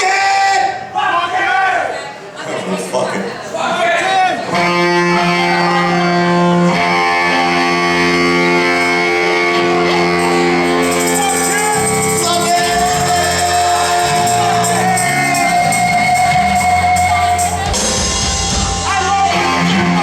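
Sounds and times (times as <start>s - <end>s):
voices shouting or singing: 3.6s - 20.0s
live band playing: 4.4s - 20.0s.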